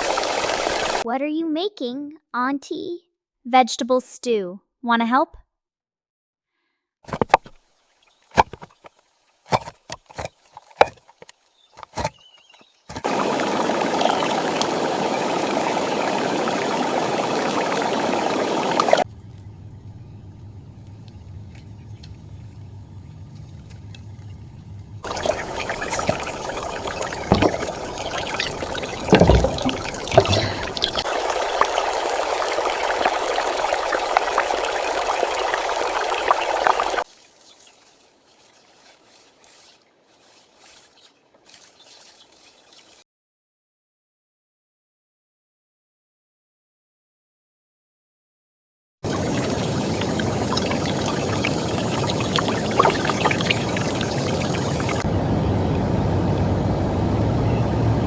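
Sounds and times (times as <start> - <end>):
water running and trickling: 0.0 - 1.0, 7.8 - 19.1, 25.0 - 43.0, 49.1 - 55.1
sharp knocks: 29.1 - 31.0.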